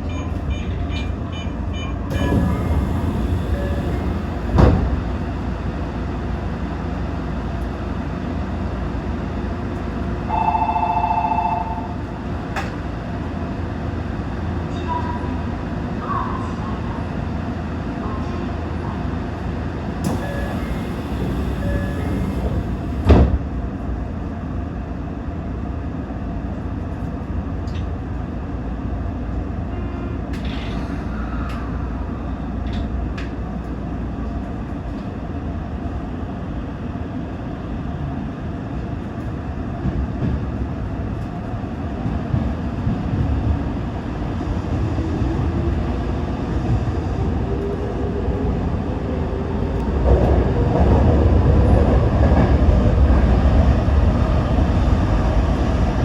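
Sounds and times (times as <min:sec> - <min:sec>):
electric train running: 0:01.8 - 0:05.1, 0:20.0 - 0:23.1.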